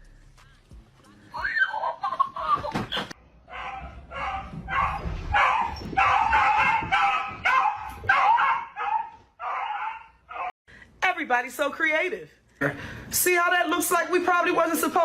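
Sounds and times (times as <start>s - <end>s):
dog yipping and barking: 3.5s - 10.5s.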